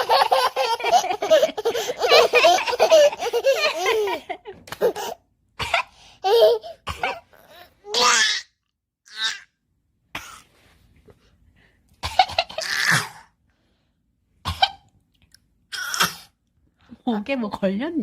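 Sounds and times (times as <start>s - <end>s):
laughter: 0.0s - 4.9s
pretend coughs and sneezes: 5.6s - 5.9s, 6.7s - 7.4s, 10.1s - 10.5s, 12.0s - 13.4s, 14.4s - 14.9s.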